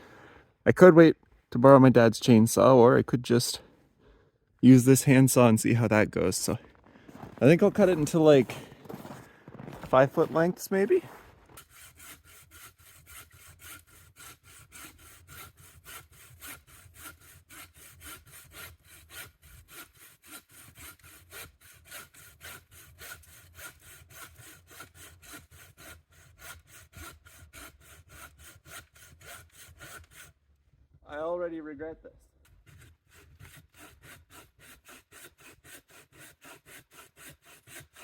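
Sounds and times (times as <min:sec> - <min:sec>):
handsaw cutting wood: 0:06.4 - 0:30.4, 0:32.5 - 0:38.0.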